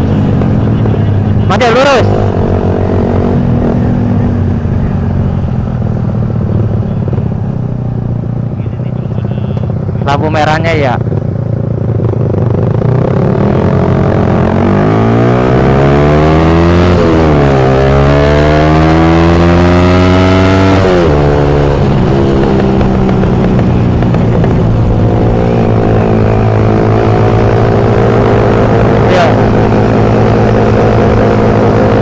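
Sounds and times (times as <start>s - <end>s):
motorcycle engine accelerating: 0.0s - 32.0s
wind rush on microphone: 20.3s - 32.0s.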